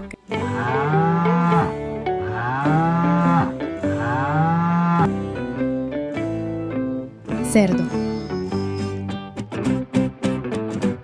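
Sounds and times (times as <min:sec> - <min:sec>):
light background tune: 0:00.0 - 0:11.0
cow mooing: 0:00.4 - 0:05.1.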